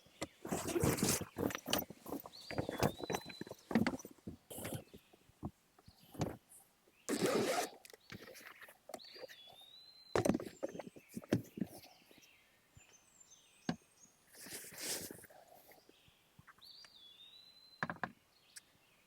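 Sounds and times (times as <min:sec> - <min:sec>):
irregular clicks and knocks: 0:00.2 - 0:06.4
gear being handled: 0:00.4 - 0:04.8, 0:07.1 - 0:08.6.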